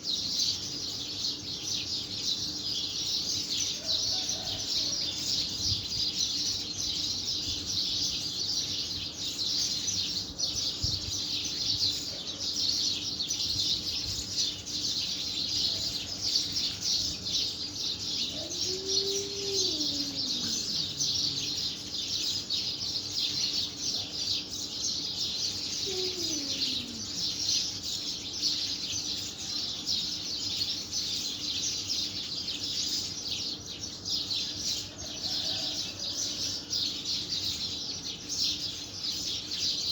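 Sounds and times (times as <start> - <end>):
small birds chirping: 0.0 - 39.9
faint low falling bird calls: 12.9 - 23.6, 25.1 - 28.6.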